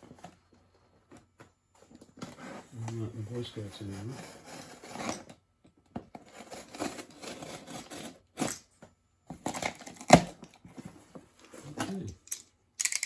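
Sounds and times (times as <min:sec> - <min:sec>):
cardboard scraping and rustling: 0:01.8 - 0:05.4, 0:06.0 - 0:08.6
tape tearing: 0:09.4 - 0:10.5.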